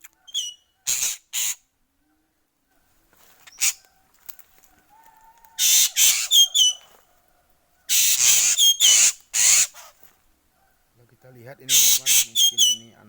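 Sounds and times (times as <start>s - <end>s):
bird harsh raspy screeching calls: 0.3s - 1.7s, 3.4s - 3.9s, 5.5s - 6.9s, 7.9s - 10.0s, 11.6s - 13.0s.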